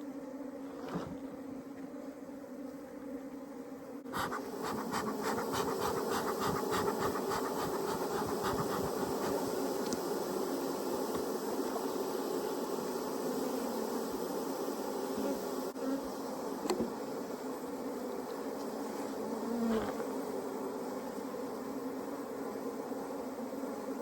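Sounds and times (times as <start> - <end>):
honeybees buzzing: 0.0 - 24.0
quick scratchy clicks: 4.2 - 9.4.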